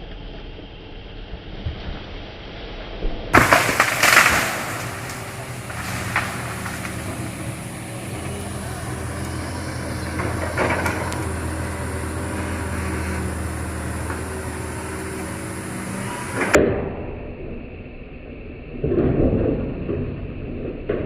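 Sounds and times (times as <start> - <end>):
excavator diesel engine running: 3.4 - 16.6.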